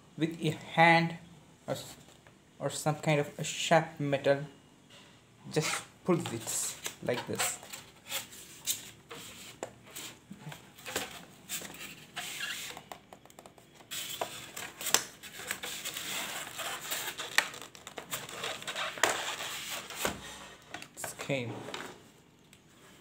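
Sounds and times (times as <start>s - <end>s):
scraping of laptop cover: 5.6s - 20.9s
plastic cover clicks and snaps: 14.2s - 15.6s.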